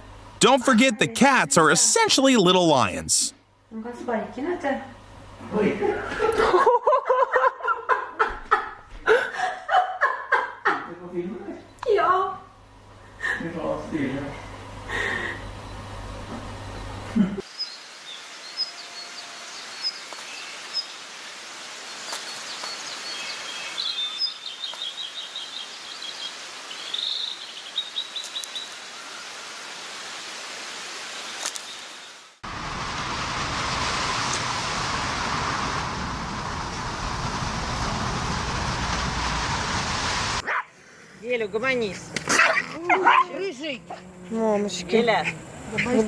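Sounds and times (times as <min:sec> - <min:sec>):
background hiss: 0:00.0 - 0:03.4, 0:17.2 - 0:43.2
faint steady hum: 0:00.0 - 0:33.3
small birds chirping: 0:16.7 - 0:21.2, 0:21.8 - 0:30.0
rushing noise: 0:32.4 - 0:40.4.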